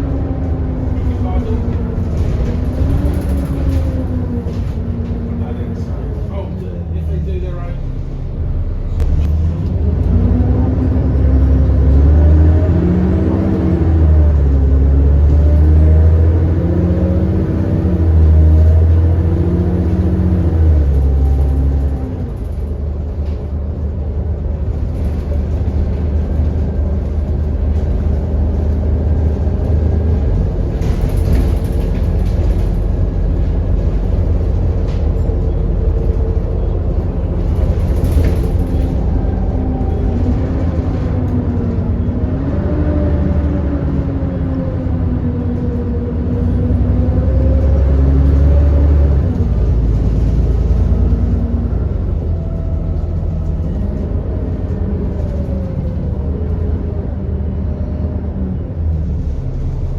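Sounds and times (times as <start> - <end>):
bus engine rumbling: 0.0 - 59.9.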